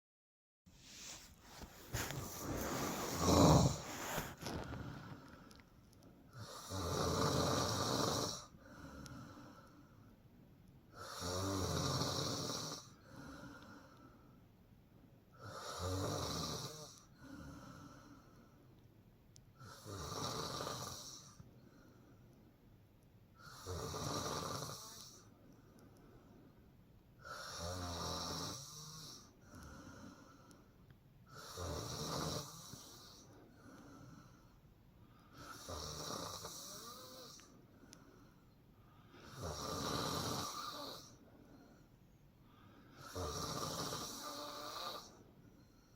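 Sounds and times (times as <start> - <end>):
soft breathing: 0.7 - 6.4, 37.2 - 39.5, 40.6 - 43.2
woman snoring: 1.0 - 5.2, 6.4 - 8.5, 10.9 - 13.4, 15.4 - 17.9, 19.6 - 21.4, 23.4 - 25.3, 27.2 - 30.0, 31.3 - 33.3, 35.4 - 37.4, 39.2 - 41.2, 43.0 - 45.2.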